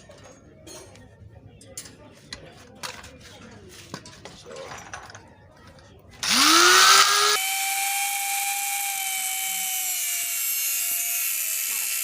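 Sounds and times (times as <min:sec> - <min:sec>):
electric grinder whining: 0:06.2 - 0:12.0.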